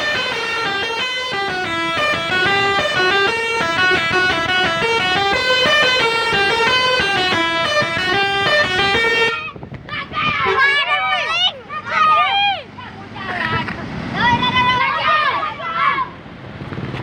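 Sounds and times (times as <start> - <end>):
multi-tone bus horn tune: 0.0 - 9.6, 10.4 - 11.3.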